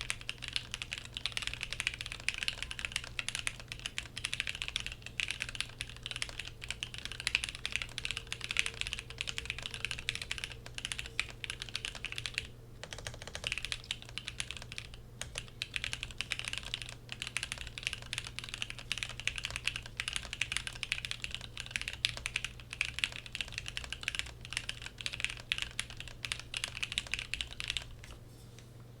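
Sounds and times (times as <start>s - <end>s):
mechanical keyboard typing: 0.0s - 28.1s.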